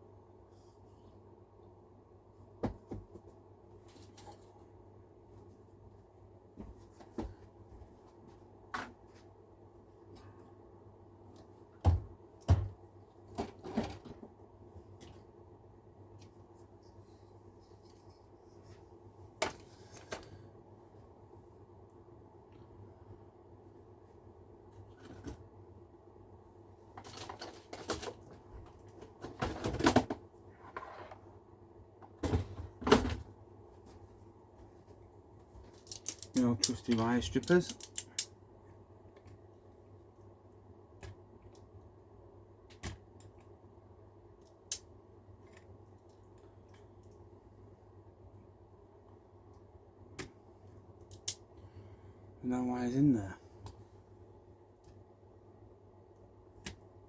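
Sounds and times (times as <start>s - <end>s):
low steady hum: 0.0s - 57.0s
small tools clicking and knocking: 35.8s - 38.3s.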